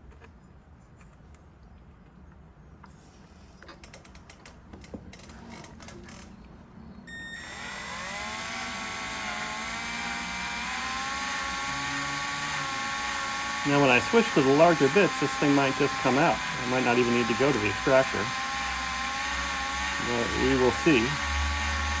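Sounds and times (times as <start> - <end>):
electric drill whining: 7.1 - 22.0.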